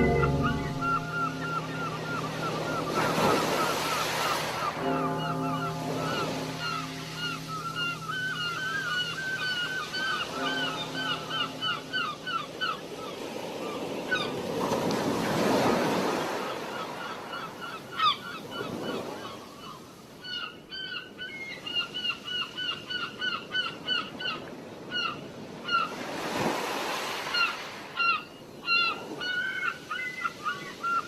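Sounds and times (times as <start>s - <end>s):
waves rushing: 0.0s - 20.0s, 26.0s - 28.0s
birds calling: 0.0s - 26.0s
wind: 0.0s - 31.0s.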